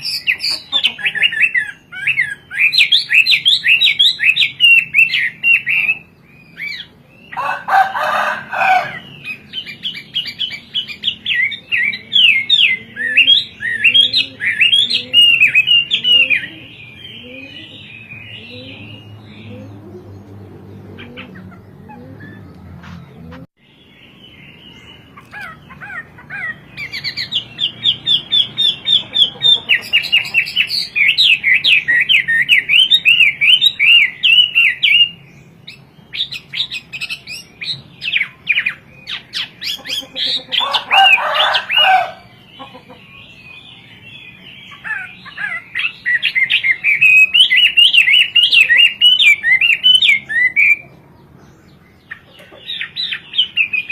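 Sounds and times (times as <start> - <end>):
bird singing whistled notes: 1.1 - 7.0, 43.4 - 50.9.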